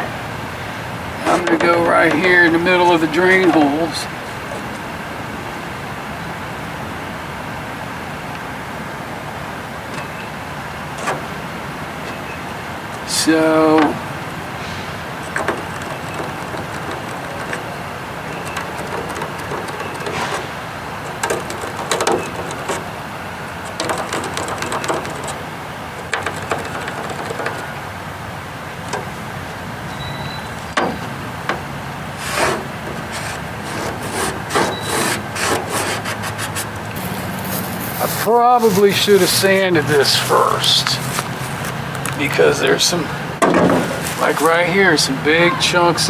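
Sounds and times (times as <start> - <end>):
wood rubbing and scraping: 1.2 - 4.9, 13.0 - 27.9, 30.8 - 45.7.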